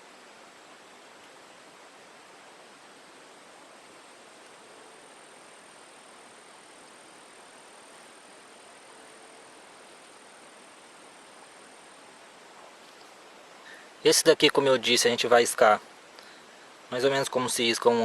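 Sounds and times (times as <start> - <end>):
stream water running: 0.0 - 18.0.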